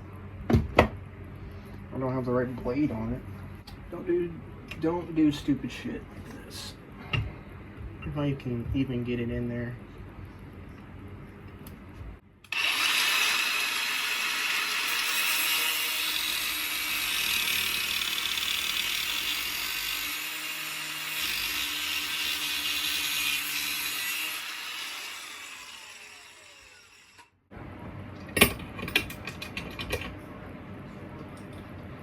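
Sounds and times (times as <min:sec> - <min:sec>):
angle grinder cutting metal: 0:12.5 - 0:27.3.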